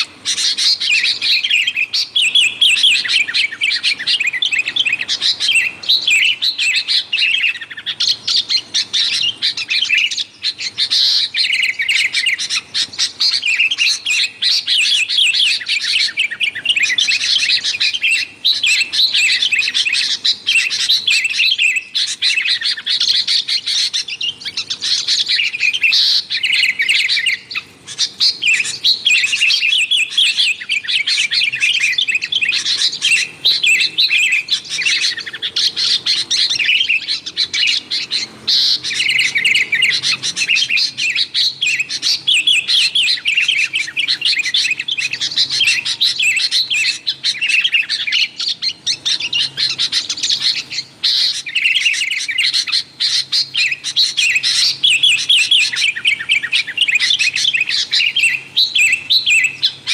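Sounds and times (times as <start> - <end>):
birds chirping noisily: 0.0 - 59.9.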